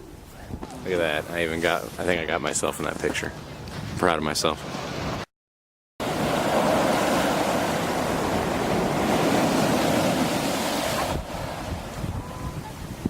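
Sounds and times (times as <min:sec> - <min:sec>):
sea surf washing onto beach: 0:06.0 - 0:13.0
wind on microphone: 0:06.0 - 0:13.0.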